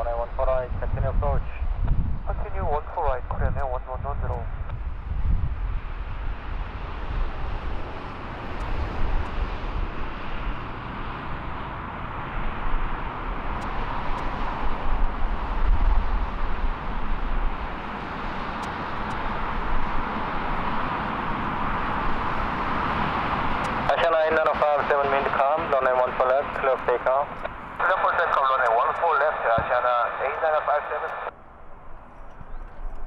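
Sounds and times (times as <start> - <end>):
jet engines rumbling: 0.0 - 33.0.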